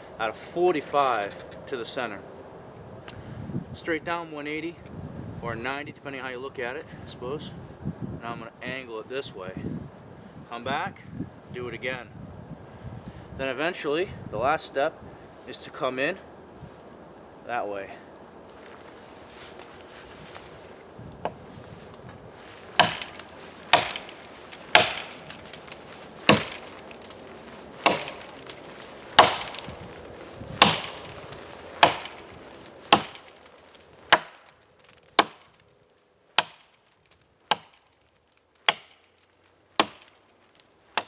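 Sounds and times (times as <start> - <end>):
axe chopping into log: 22.8 - 26.8, 27.8 - 28.6, 29.2 - 29.8, 30.6 - 31.2, 31.8 - 32.3, 32.9 - 33.3, 34.1 - 34.5, 35.1 - 35.6, 36.4 - 36.7, 37.5 - 37.8, 38.6 - 39.0, 39.8 - 40.2.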